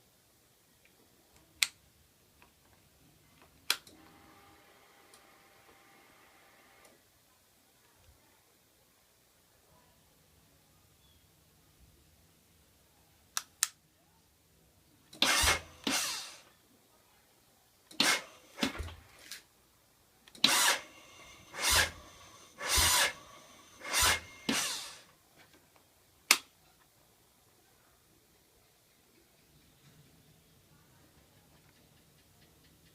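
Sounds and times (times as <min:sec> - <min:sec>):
starter motor cranking: 0:15.2 - 0:16.4, 0:18.0 - 0:19.0, 0:20.4 - 0:25.1.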